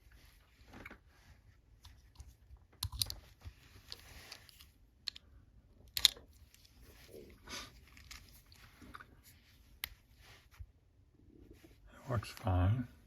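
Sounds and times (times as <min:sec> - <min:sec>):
sharp metallic padlock clicks: 0:05.9 - 0:06.2.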